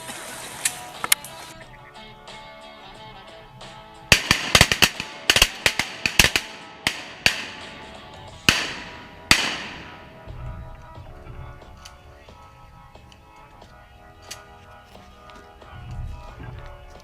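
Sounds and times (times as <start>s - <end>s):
background music: 0.0s - 17.0s
shotgun blasts: 4.1s - 10.5s.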